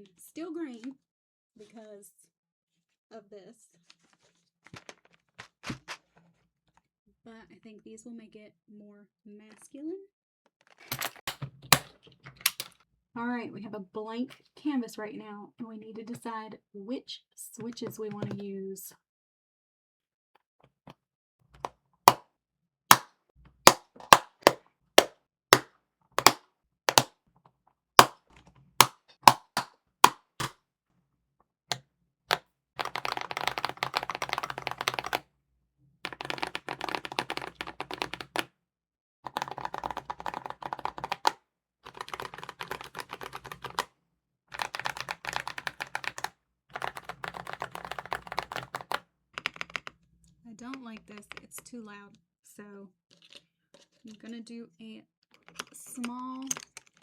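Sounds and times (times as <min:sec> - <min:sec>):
mechanical keyboard clicking: 0:25.6 - 0:27.1, 0:29.3 - 0:30.5, 0:32.8 - 0:35.2, 0:36.1 - 0:38.5, 0:39.3 - 0:43.9, 0:44.6 - 0:49.9.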